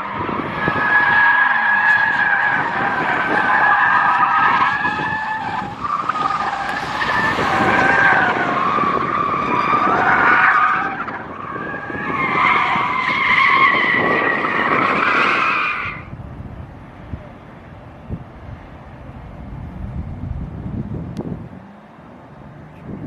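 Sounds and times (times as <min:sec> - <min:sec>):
tyres squealing: 0:00.0 - 0:16.1.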